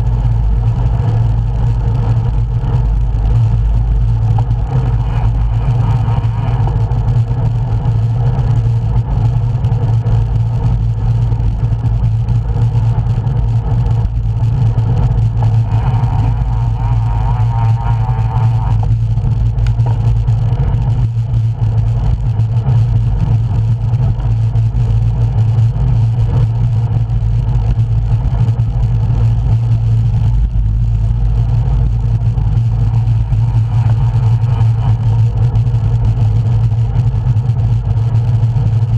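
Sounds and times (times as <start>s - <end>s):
wind buffeting microphone: 0.0s - 21.0s.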